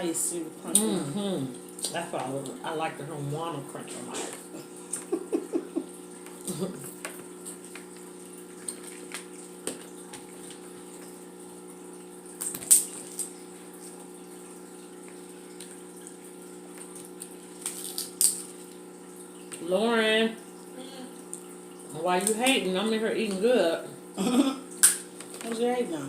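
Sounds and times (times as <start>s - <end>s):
eating clicks and smacks: 4.3s - 11.1s, 12.3s - 13.4s, 16.7s - 18.8s, 24.7s - 25.4s.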